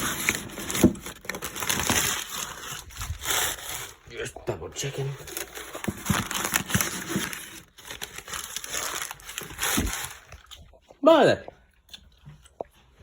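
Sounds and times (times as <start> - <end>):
packaging crinkling: 0.0 - 4.1, 5.1 - 10.7.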